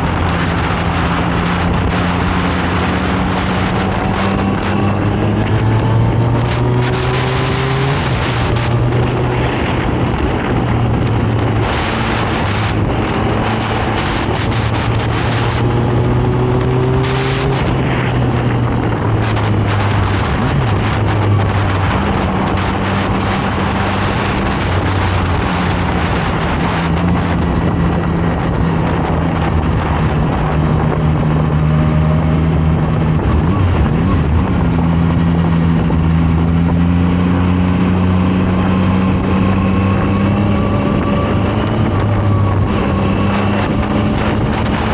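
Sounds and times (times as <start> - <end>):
motorcycle engine revving: 0.0 - 44.9
wind rushing over microphone: 0.0 - 44.9.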